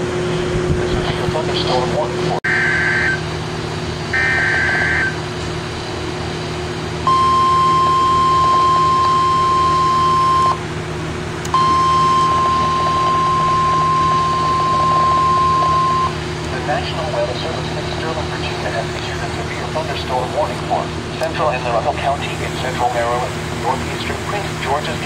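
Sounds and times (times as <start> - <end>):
low hum: 0.0 - 25.0
receiver static: 0.2 - 3.4, 4.1 - 5.4, 11.6 - 25.0
high-pitched alarm tone: 2.4 - 3.3, 4.1 - 5.3, 7.0 - 10.6, 11.5 - 16.2
screeching data bursts: 4.1 - 5.3.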